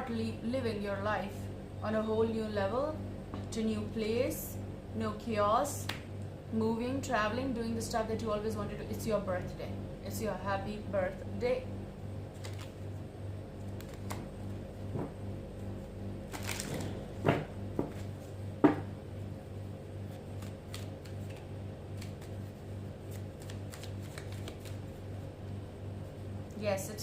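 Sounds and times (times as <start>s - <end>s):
cards being shuffled: 12.3s - 12.9s, 13.6s - 14.4s, 16.3s - 17.0s, 17.8s - 18.4s, 20.1s - 25.2s.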